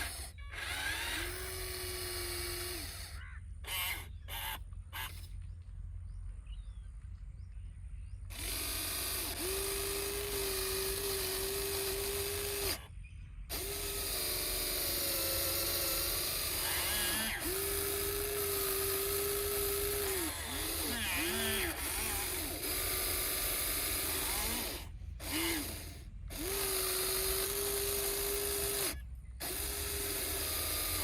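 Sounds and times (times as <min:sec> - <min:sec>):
model excavator motor whining: 0:00.0 - 0:06.0, 0:08.2 - 0:31.0
mechanical rattle: 0:13.5 - 0:31.0.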